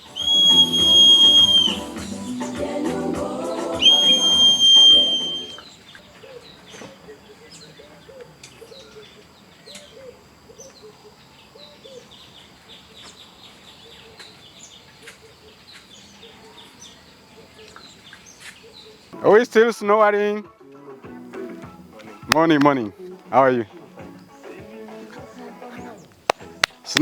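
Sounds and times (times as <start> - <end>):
short lower bird calls: 0.0 - 1.9
music with high whistle-like tone: 0.0 - 5.7
birds chirping and calling: 4.8 - 19.2.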